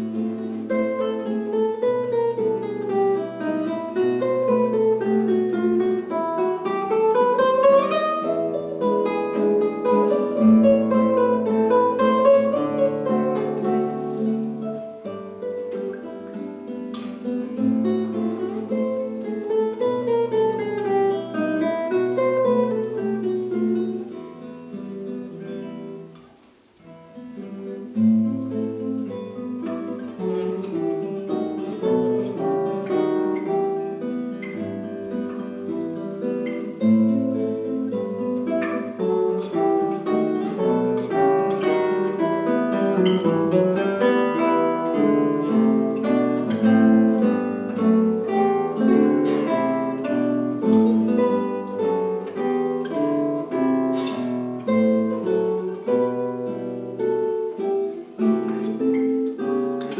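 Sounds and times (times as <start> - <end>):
two acoustic guitars playing: 0.0 - 59.9.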